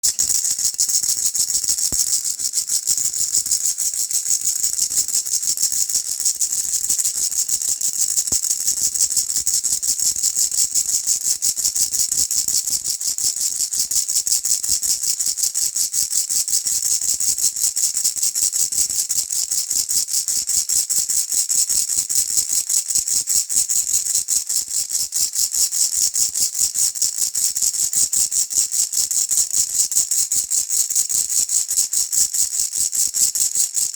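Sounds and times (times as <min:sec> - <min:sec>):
baby rattle shaking: 0:00.0 - 0:33.9.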